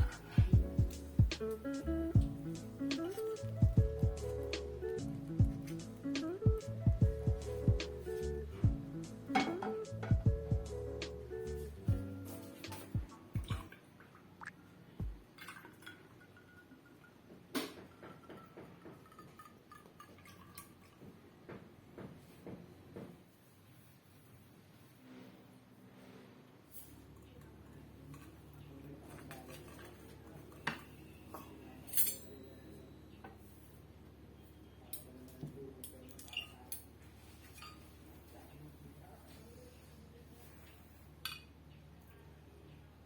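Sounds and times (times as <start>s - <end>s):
kitchenware clinking: 9.3s - 9.8s, 15.4s - 20.6s, 29.0s - 32.4s, 41.2s - 41.5s
faint ringing tone: 32.2s - 33.7s.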